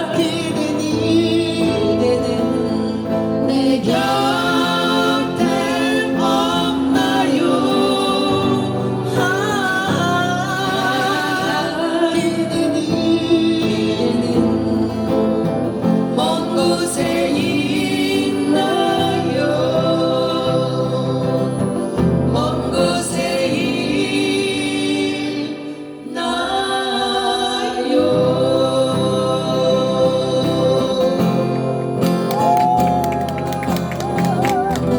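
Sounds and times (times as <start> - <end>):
acoustic guitar: 0.0 - 34.9
person singing: 0.0 - 34.9.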